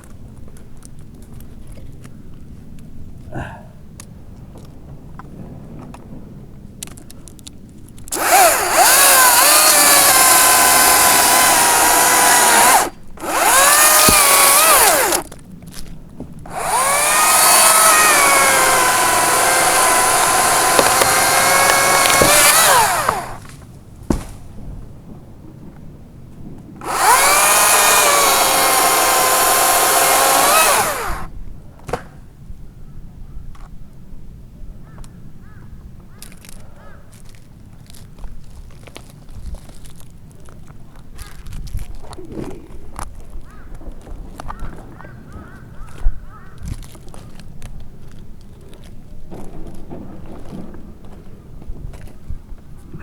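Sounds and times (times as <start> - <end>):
electric chainsaw cutting: 8.1 - 15.3, 16.5 - 23.5, 26.8 - 31.3.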